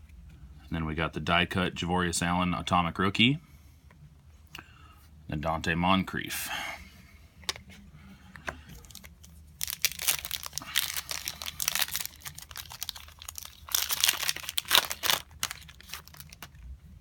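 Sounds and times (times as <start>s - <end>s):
wrapper tearing and crinkling: 8.8s - 16.6s.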